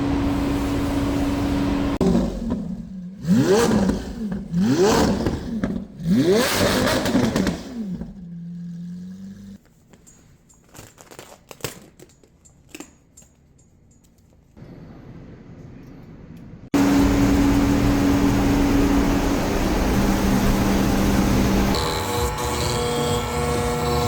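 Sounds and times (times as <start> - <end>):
car engine revving and idling: 0.0 - 9.6, 16.8 - 24.0.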